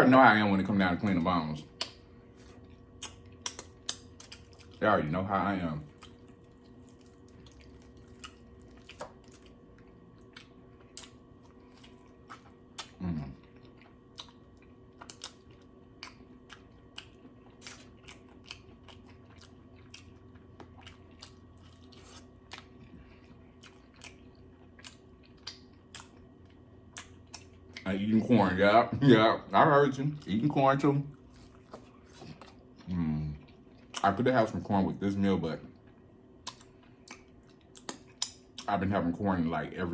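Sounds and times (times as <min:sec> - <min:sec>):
chewing and biting meat: 0:01.7 - 0:28.0, 0:35.8 - 0:38.7
low voice hum: 0:12.8 - 0:13.5, 0:32.8 - 0:33.5.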